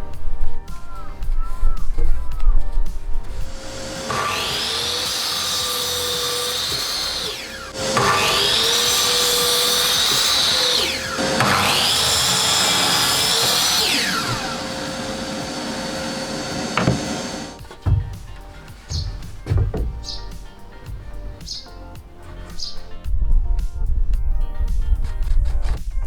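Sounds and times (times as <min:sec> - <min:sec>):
quiet background music: 0:00.0 - 0:26.0
power tool motor whining: 0:03.2 - 0:21.6.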